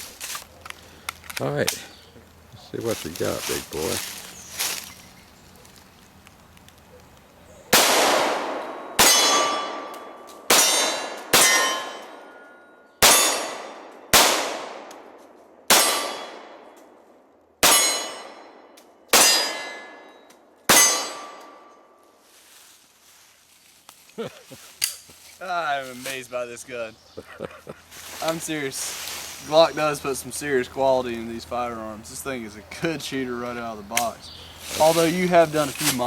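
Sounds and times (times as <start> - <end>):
pistol shots: 7.7 - 12.3, 13.0 - 16.7, 17.6 - 20.0, 20.7 - 21.7
steel target clanging: 9.0 - 13.6, 17.6 - 18.4, 19.2 - 21.7.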